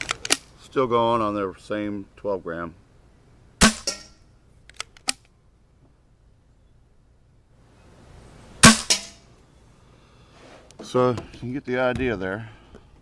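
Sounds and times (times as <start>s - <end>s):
weaker crack: 3.6s - 5.3s, 8.6s - 9.3s
paintball gun shot pop: 8.6s - 9.1s.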